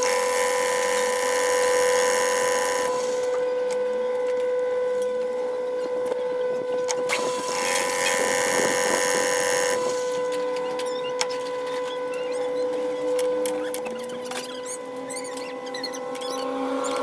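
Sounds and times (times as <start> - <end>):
harsh machining noise: 0.0 - 3.4, 7.1 - 10.2
lathe motor whine: 0.0 - 4.7, 5.3 - 13.8.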